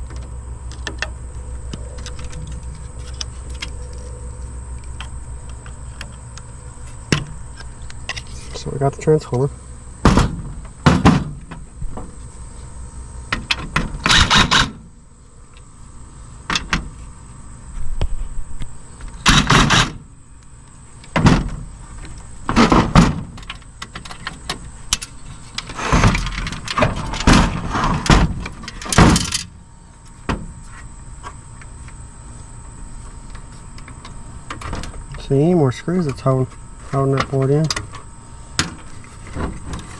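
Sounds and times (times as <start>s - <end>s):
thuds: 10.0s - 12.2s, 21.2s - 21.7s, 22.4s - 23.6s, 25.7s - 29.5s.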